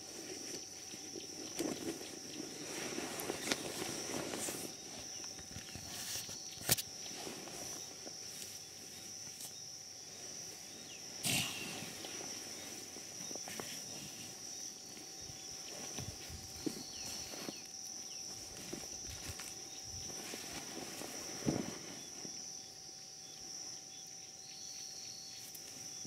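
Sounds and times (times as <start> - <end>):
animal moving in sawdust: 0.0 - 11.1, 11.7 - 22.5.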